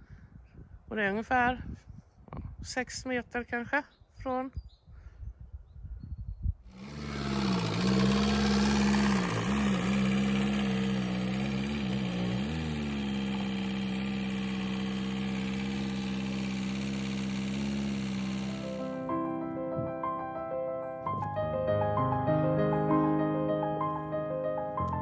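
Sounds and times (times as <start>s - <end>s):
car engine idling: 6.7s - 19.1s.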